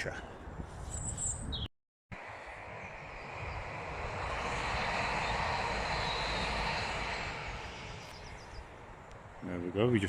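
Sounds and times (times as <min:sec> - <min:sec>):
train rumbling over bridge: 0:02.1 - 0:09.9.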